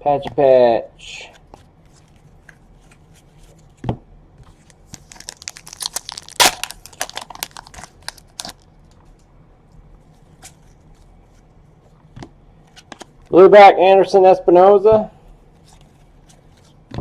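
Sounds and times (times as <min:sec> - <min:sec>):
plastic wrapper tearing and crinkling: 0:04.7 - 0:08.7.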